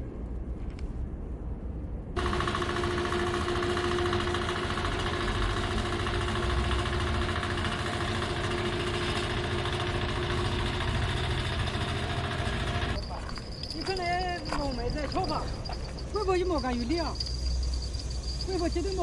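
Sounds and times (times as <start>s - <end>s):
low rumble: 0.0s - 2.2s
engine running: 2.2s - 19.0s.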